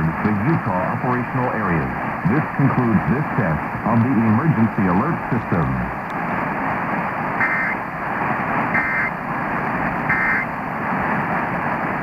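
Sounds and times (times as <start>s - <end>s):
broadcast hiss: 0.0s - 12.0s
two-tone data bursts: 7.4s - 7.8s, 8.8s - 9.1s, 10.1s - 10.5s.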